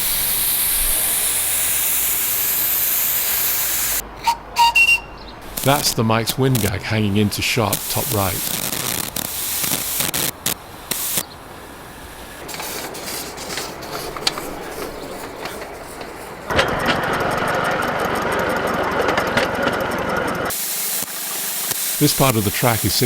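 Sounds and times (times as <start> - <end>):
steam hissing from safety valves: 0.0 - 16.6, 20.5 - 23.0
miniature steam locomotive running: 0.0 - 23.0
sharp mechanical clicks: 5.4 - 23.0.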